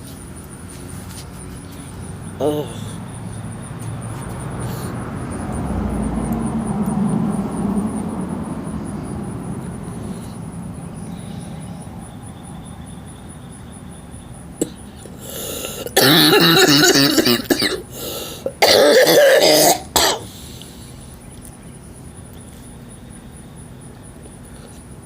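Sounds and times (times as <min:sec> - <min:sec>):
woman coughing: 0:15.9 - 0:17.9, 0:18.5 - 0:20.3.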